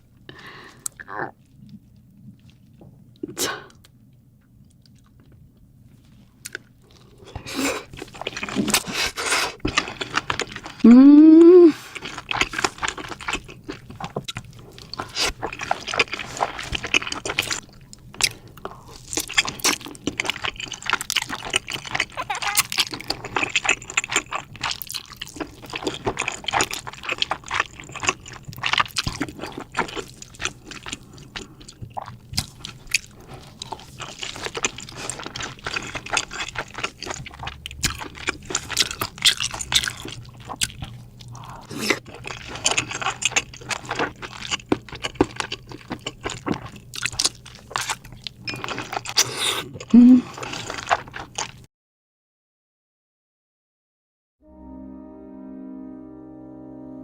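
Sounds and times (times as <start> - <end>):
person chewing and crunching food: 0.3 - 51.7.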